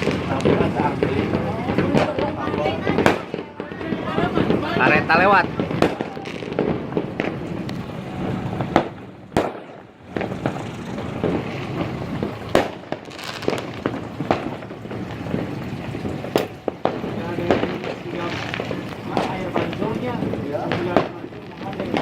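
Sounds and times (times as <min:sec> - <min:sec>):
firecrackers crackling: 0:00.0 - 0:22.0
loud firework bangs: 0:00.0 - 0:22.0.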